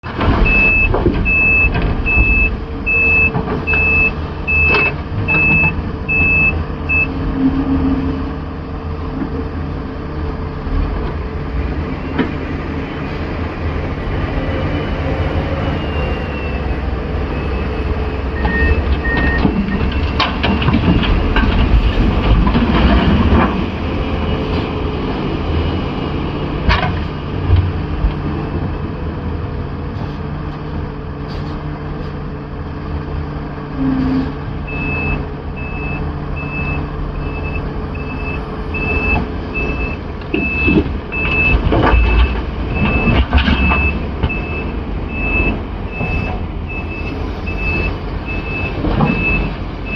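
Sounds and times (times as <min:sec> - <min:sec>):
excavator diesel engine under load: 0:00.0 - 0:49.9
reversing alarm beeping: 0:00.4 - 0:07.2, 0:15.5 - 0:21.4, 0:34.7 - 0:49.9.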